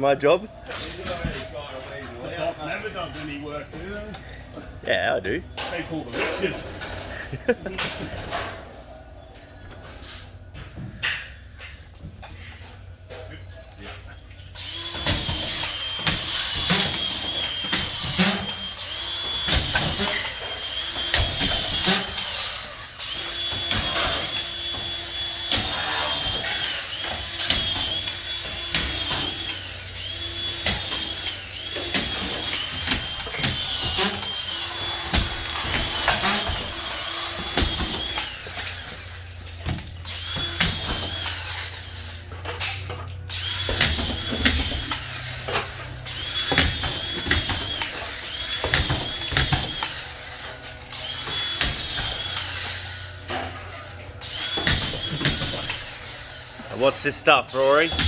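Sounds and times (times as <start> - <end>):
screw gun motor whining: 14.4 - 58.0.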